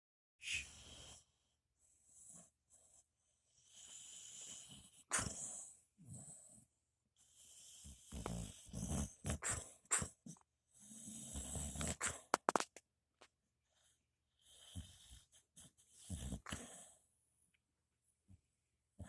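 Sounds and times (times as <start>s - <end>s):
dog snoring: 0.5s - 6.6s, 7.2s - 12.3s, 13.7s - 17.0s.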